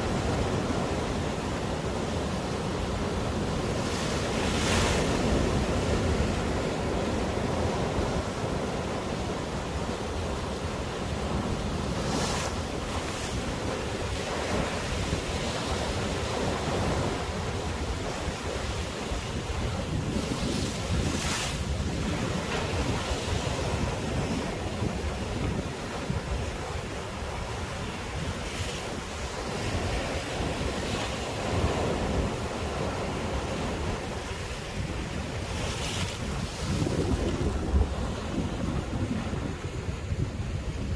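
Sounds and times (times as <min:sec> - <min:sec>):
waves breaking on beach: 0:00.0 - 0:40.9
wind buffeting microphone: 0:00.0 - 0:40.9.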